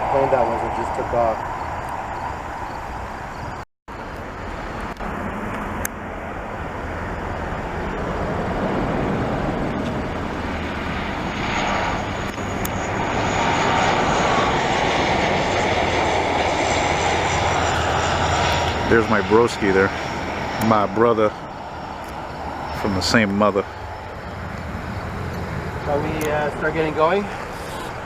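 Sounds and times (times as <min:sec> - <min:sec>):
high jet whine: 0:00.0 - 0:28.0
jet engines roaring: 0:00.0 - 0:28.0.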